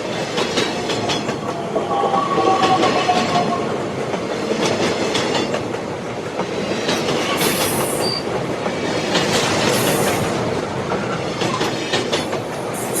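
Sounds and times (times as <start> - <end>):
train wagons rumbling: 0.0 - 13.0
high hiss from wheels: 9.5 - 10.5, 12.6 - 13.0.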